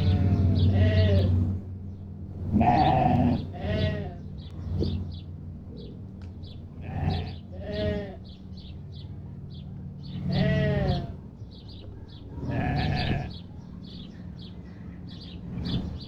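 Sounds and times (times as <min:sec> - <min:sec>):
sheep bleating: 0:00.0 - 0:01.3, 0:02.5 - 0:04.2, 0:06.8 - 0:08.2, 0:10.3 - 0:11.2, 0:12.5 - 0:13.3.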